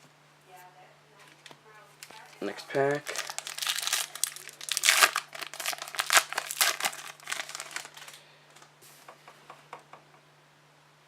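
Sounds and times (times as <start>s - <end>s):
wrapper tearing and crinkling: 2.5s - 8.2s.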